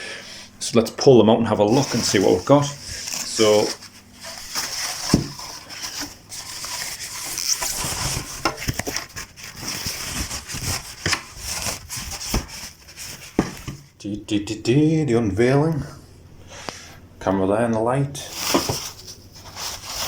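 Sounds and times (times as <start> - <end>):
packaging rustling and crinkling: 1.6 - 13.9, 18.2 - 20.0.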